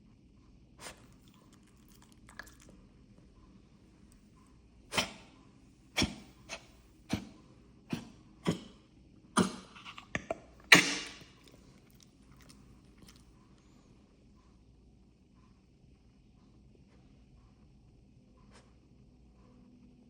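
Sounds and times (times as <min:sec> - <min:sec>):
person coughing: 0:09.4 - 0:11.3.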